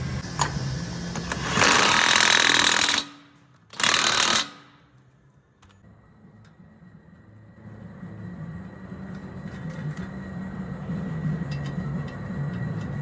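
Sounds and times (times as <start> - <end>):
impact wrench running: 1.1 - 4.9.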